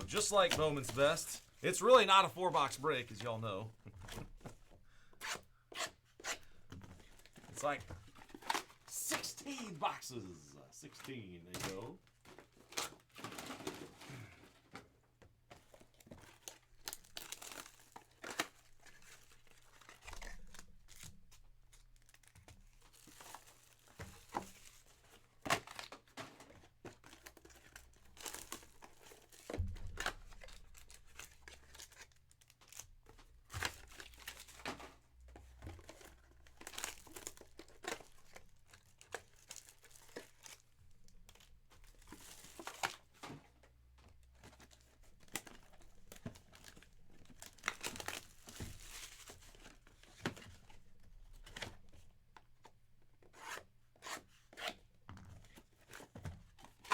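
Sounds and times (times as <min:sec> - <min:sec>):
plastic wrapping crinkling and tearing: 0:00.0 - 0:03.3, 0:15.7 - 0:35.0, 0:35.8 - 0:43.2, 0:44.4 - 0:50.8
cards handled: 0:00.0 - 0:10.0.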